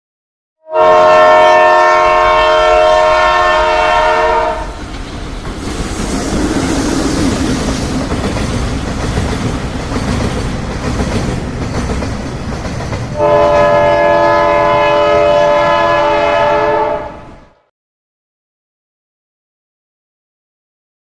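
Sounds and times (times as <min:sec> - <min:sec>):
train air horn chord: 0:00.6 - 0:04.8, 0:13.2 - 0:17.6
train wheels rumbling on track: 0:00.9 - 0:17.4.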